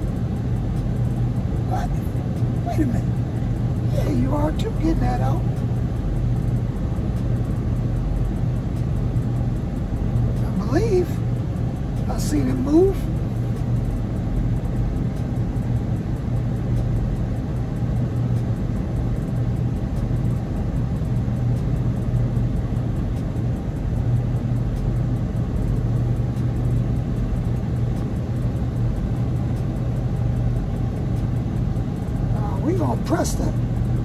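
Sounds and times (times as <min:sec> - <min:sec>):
car engine idling: 0:00.0 - 0:17.6.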